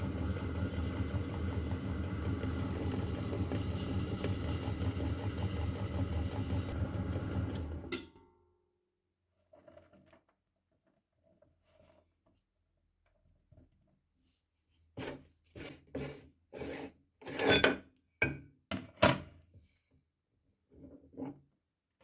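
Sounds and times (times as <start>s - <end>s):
meat grinder scraping: 0.0s - 7.9s.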